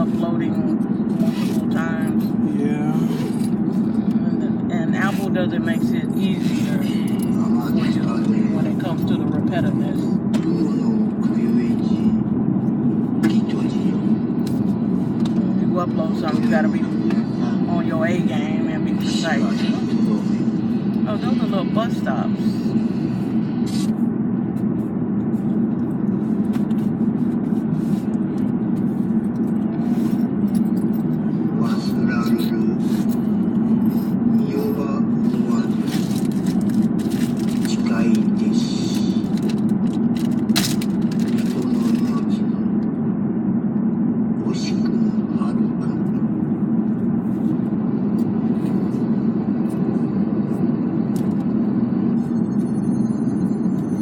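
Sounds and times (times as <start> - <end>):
road and engine rumble: 0.0 - 54.0.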